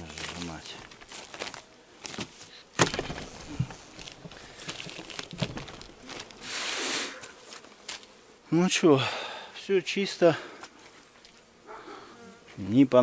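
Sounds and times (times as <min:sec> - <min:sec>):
wooden frames knocking and scraping: 0:00.2 - 0:06.4.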